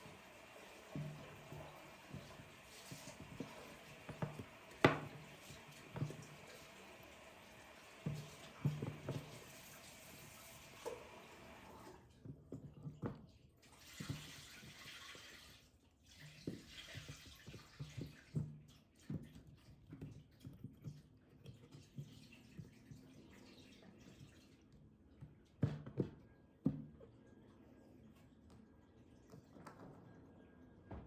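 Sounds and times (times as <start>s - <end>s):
tap water running into sink: 0.0s - 26.8s
knocks and clatter of handled things: 1.0s - 6.4s, 12.2s - 13.4s, 25.2s - 27.0s.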